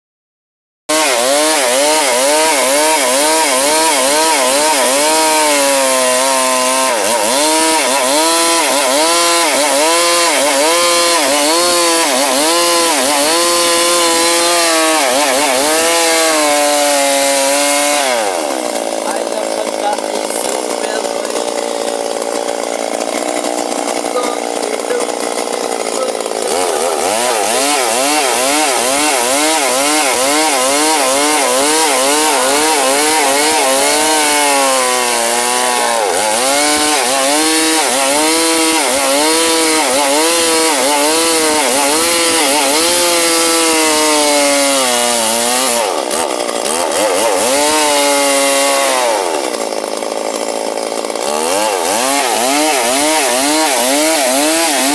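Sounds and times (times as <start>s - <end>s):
chainsaw cutting wood: 0.9s - 54.9s.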